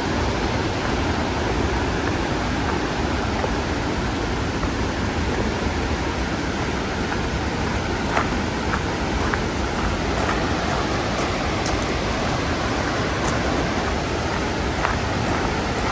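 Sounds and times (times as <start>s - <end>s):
waterfall roaring: 0.0s - 15.9s.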